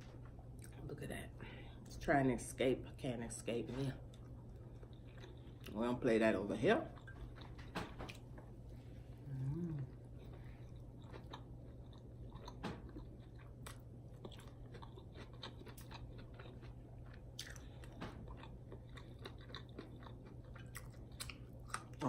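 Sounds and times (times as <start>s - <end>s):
low hum: 0.0s - 22.0s
person chewing food: 4.0s - 5.8s, 6.9s - 22.0s.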